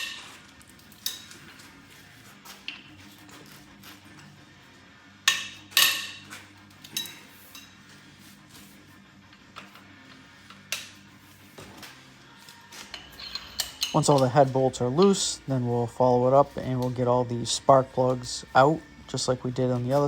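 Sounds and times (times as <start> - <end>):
wrench clanking on metal: 12.9 - 14.3.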